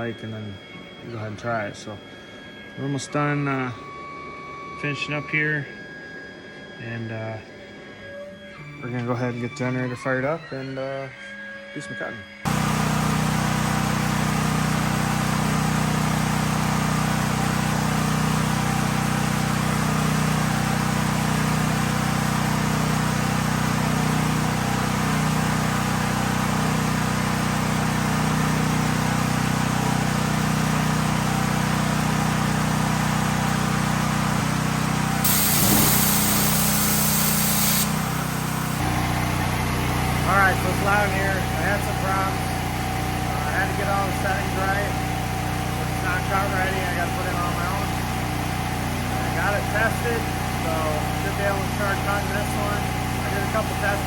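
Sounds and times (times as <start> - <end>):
generator engine running: 12.5 - 54.0
loud hiss: 35.2 - 38.8.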